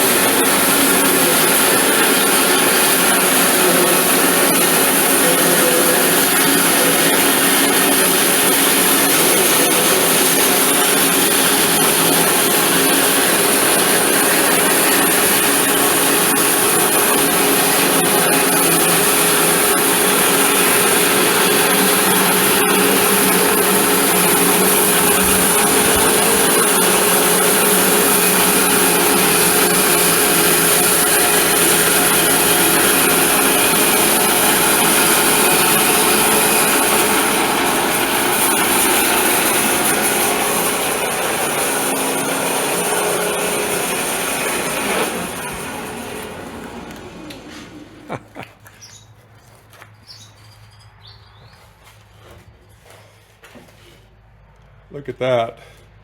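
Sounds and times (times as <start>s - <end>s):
power saw cutting wood: 0.0s - 48.8s.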